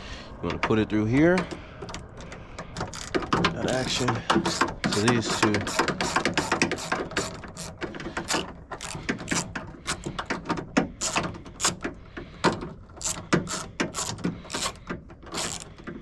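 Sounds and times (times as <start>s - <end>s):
ratchet clicking: 2.8s - 3.3s, 4.0s - 11.9s, 13.0s - 16.0s.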